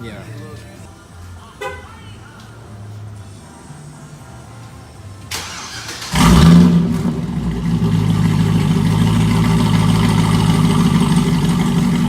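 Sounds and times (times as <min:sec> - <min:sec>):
car engine starting and idling: 0:02.3 - 0:12.0
engine rev flare: 0:05.3 - 0:12.0.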